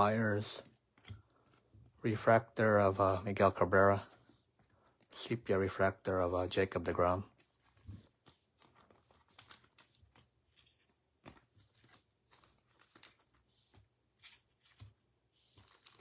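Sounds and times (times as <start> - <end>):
trading cards being handled: 7.1 - 16.0.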